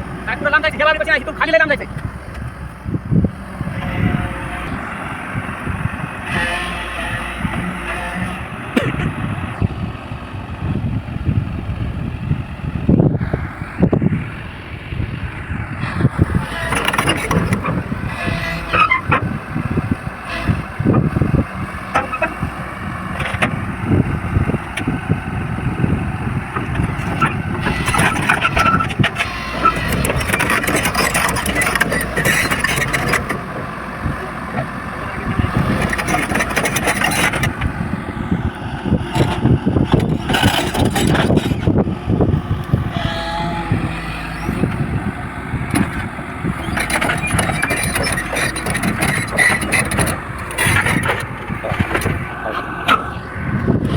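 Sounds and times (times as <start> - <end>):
diesel engines of machinery: 0.0 - 53.9
knocks and rattles: 46.6 - 53.0.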